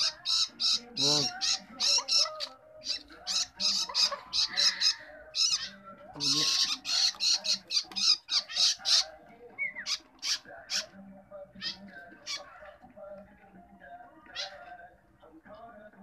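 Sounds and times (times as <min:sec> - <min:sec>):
baby bird raspy squawks: 0:00.0 - 0:11.0, 0:11.6 - 0:12.7, 0:14.3 - 0:14.7.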